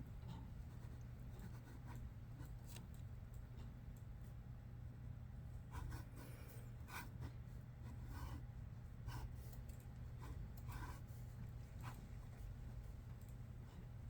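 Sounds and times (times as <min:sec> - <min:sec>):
low room hum: 0:00.0 - 0:14.0
pencil sketching on paper: 0:06.9 - 0:09.4.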